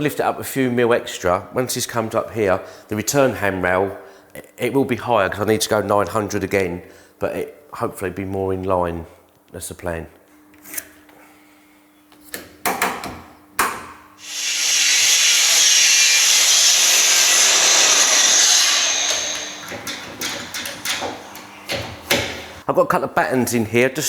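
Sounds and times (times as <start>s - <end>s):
power tool working wood: 14.2s - 22.6s
wooden knocks: 19.1s - 22.6s.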